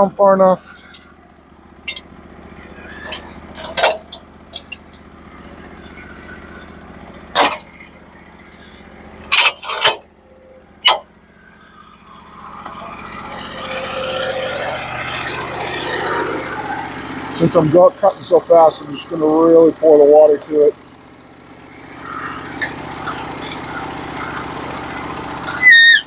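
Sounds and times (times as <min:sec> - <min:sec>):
engine running at low speed: 0:00.0 - 0:26.0
saw blade cutting log: 0:11.7 - 0:17.0.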